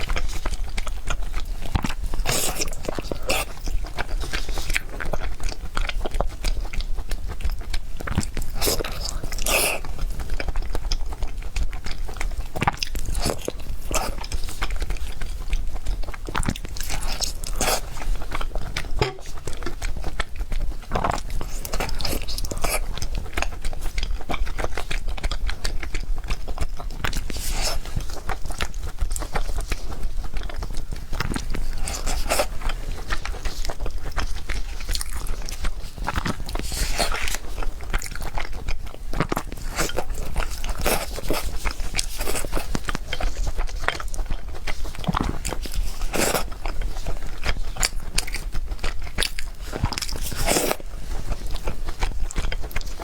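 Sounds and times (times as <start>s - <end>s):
person chewing crunchy food: 0.0s - 53.0s.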